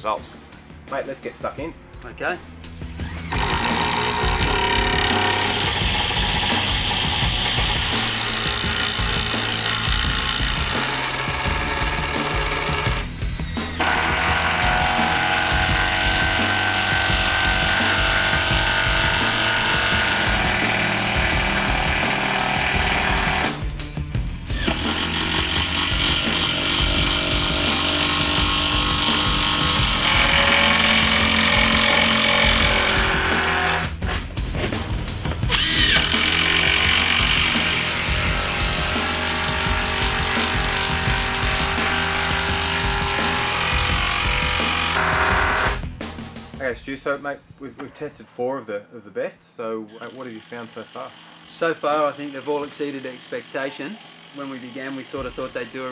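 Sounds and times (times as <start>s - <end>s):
impact driver rattling: 3.1s - 23.5s, 24.6s - 33.9s, 35.4s - 45.8s.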